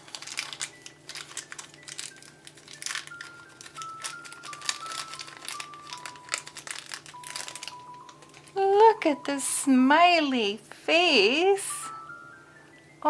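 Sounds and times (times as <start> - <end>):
plastic packaging crinkling: 0.0 - 9.4
soft background music: 0.0 - 13.0.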